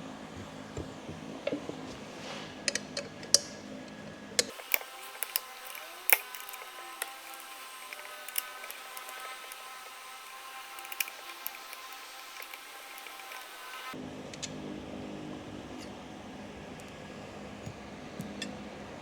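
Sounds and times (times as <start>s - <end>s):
metal gear parts clicking: 2.7s - 13.8s.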